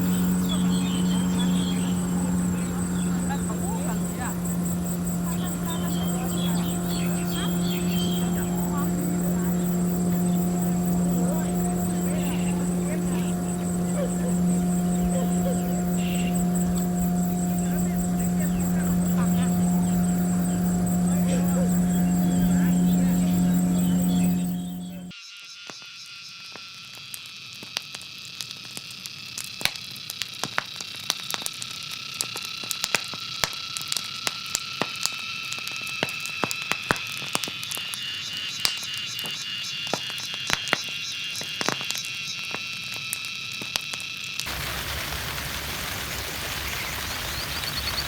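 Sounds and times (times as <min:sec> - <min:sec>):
frogs and insects trilling: 0:00.0 - 0:48.0
even hiss: 0:44.5 - 0:48.0.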